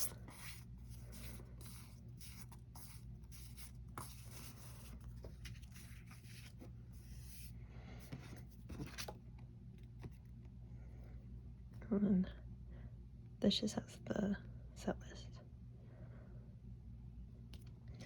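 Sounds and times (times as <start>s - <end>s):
paper and cards rustling: 0.0s - 9.2s.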